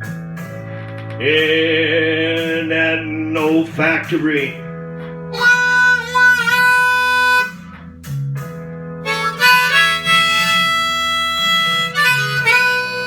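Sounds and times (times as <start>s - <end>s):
blues harmonica: 0.0s - 13.0s
guitar: 0.0s - 13.0s.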